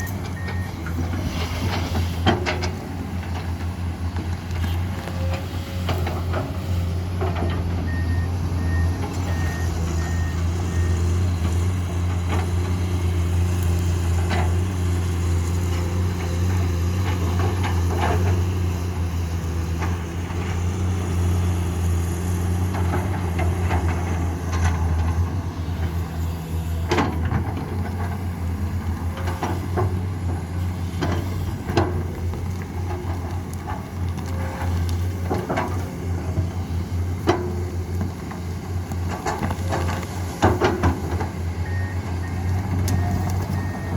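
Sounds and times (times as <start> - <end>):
reversing beeps: 0.0 - 0.8, 7.9 - 11.1, 41.6 - 43.9
heavy diesel engines running: 0.0 - 43.9.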